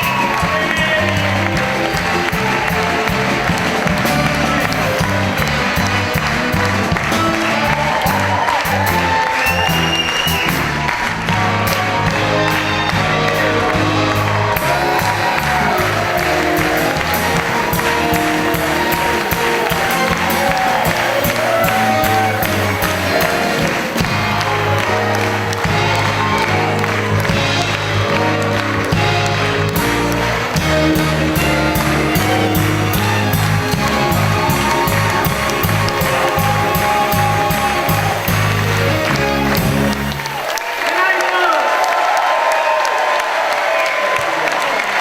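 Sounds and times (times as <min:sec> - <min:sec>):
held and sliding melodic notes: 0:00.0 - 0:40.4
live band music: 0:00.0 - 0:41.5
audience applause: 0:00.0 - 0:45.0.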